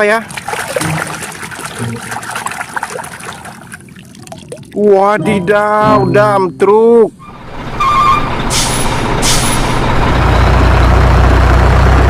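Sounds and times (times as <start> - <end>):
diesel engine rumbling: 4.8 - 12.0
short beeps: 5.2 - 7.2
air brake hisses: 8.5 - 9.8.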